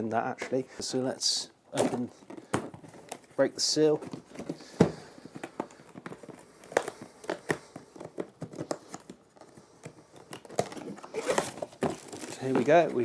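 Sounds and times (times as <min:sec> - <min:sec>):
cardboard and packaging rustling: 0:01.7 - 0:13.0
tape tearing off cardboard box: 0:10.4 - 0:12.5.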